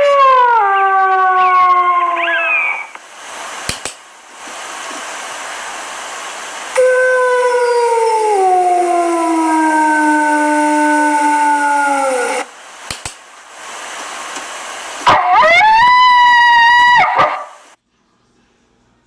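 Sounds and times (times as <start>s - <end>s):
hiss: 2.9s - 17.8s
clicks: 3.7s - 4.0s, 12.8s - 13.2s
coyote howling: 6.8s - 12.5s.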